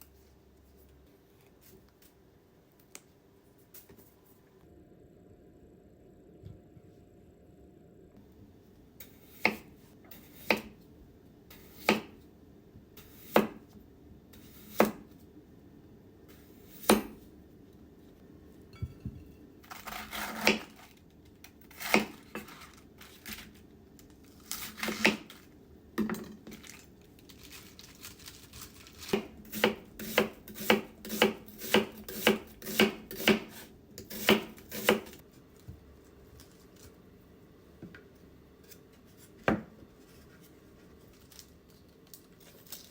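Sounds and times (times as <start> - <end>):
knife cutting on wooden board: 19.7 - 20.8.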